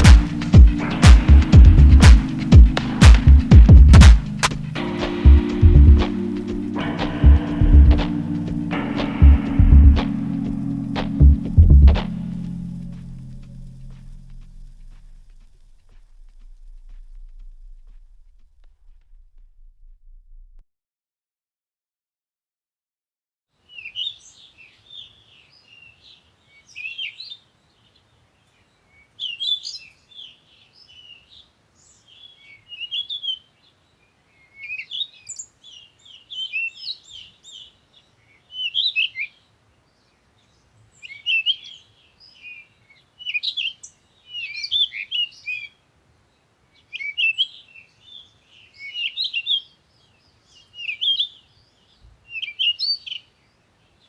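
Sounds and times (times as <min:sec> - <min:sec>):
small birds chirping: 0:00.0 - 0:18.1, 0:23.7 - 0:54.0
faint low hum: 0:00.0 - 0:20.6.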